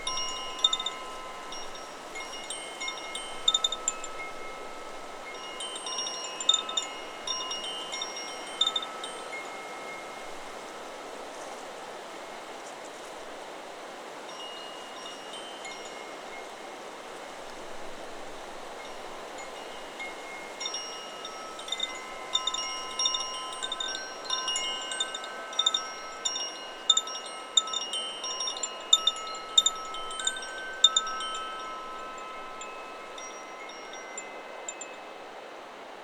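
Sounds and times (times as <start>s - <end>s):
wind chime ringing: 0.0s - 11.2s, 18.8s - 35.2s
wind hissing: 0.0s - 36.0s.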